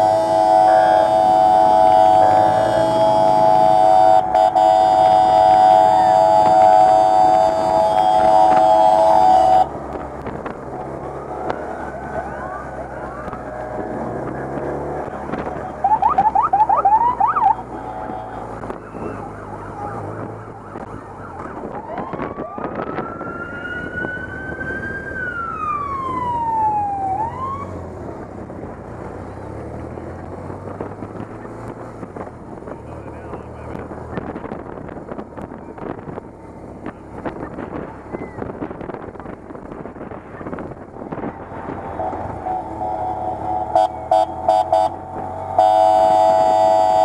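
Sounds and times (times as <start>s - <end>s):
loud steady horn tone: 0.0s - 9.8s, 15.6s - 18.7s, 41.8s - 47.0s
police sirens: 0.0s - 28.4s, 39.9s - 47.0s
motorcycle engines running: 0.0s - 47.0s.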